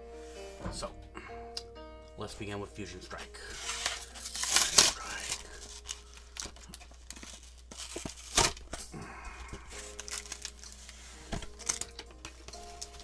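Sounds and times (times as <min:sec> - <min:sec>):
plastic packaging crinkling: 0:03.1 - 0:13.0
packaging ripping: 0:03.4 - 0:13.0.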